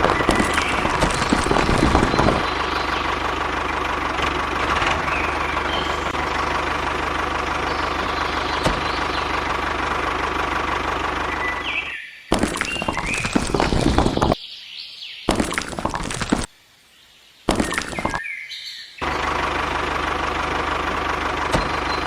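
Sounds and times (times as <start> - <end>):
loud crackling and clattering: 0.0 - 2.7, 12.3 - 14.4, 15.3 - 16.5.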